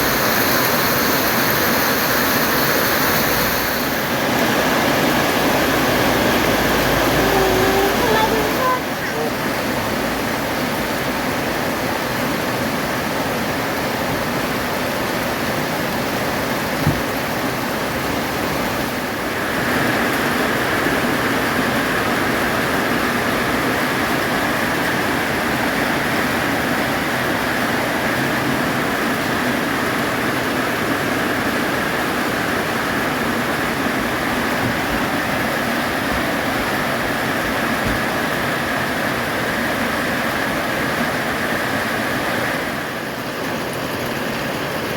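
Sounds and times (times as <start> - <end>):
heavy rain falling: 0.0 - 44.9
short knock: 16.8 - 17.1.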